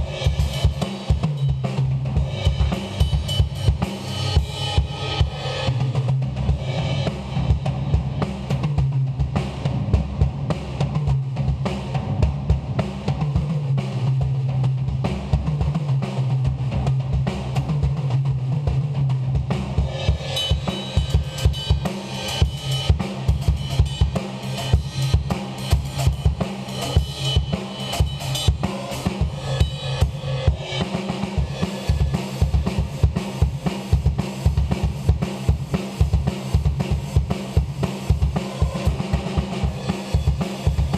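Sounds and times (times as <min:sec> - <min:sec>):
cymbals: 0:00.0 - 0:09.8, 0:19.5 - 0:40.9
bass drum: 0:00.0 - 0:40.9.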